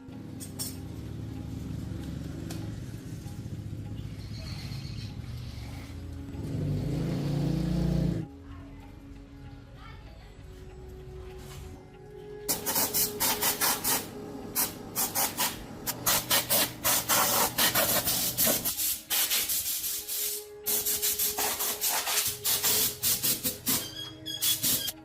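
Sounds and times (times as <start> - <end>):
hand rubbing with abrasive: 12.5 - 25.0.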